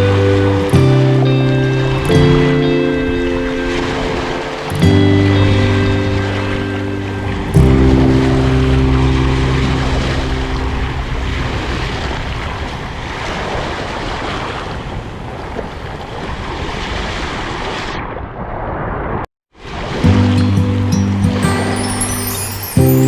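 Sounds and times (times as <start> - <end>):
music with held notes: 0.0 - 12.1, 20.0 - 23.0
sea waves on shore: 0.0 - 18.0, 19.6 - 23.0.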